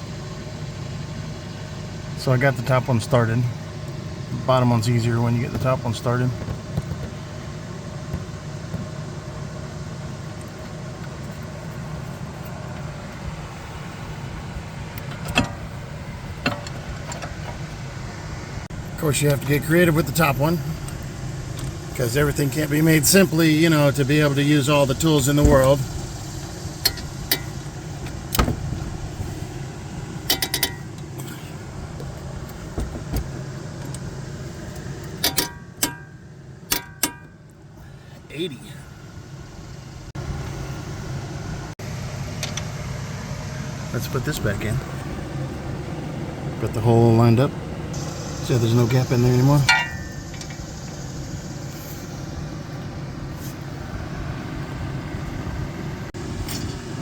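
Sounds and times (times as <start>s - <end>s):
low mechanical hum: 0.0s - 57.0s
hand tools clinking on metal bolts: 30.3s - 31.0s, 35.1s - 37.4s, 49.6s - 50.6s
metallic clink with ring: 49.6s - 50.5s.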